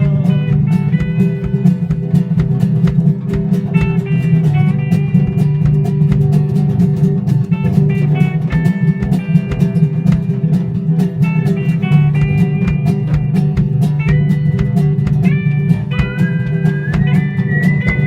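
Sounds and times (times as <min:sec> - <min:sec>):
drum kit: 0:00.0 - 0:18.0
low bass line: 0:00.0 - 0:18.0
plucked guitar notes: 0:00.0 - 0:18.0.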